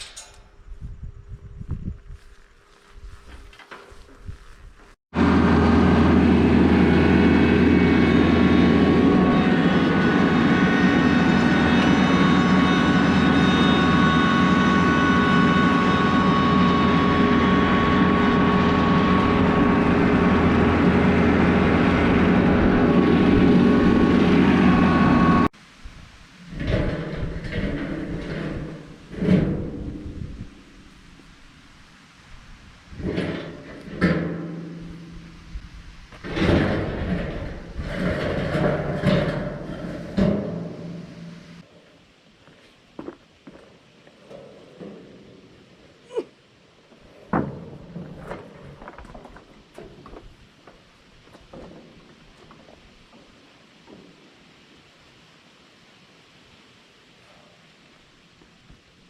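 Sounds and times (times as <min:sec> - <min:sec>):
tractor engine running: 0:03.0 - 0:25.5
knocks and clatter: 0:36.2 - 0:41.0.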